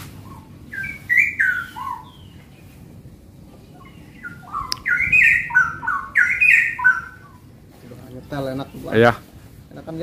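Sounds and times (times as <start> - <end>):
birds singing whistled phrases: 0.0 - 2.8, 3.6 - 7.5.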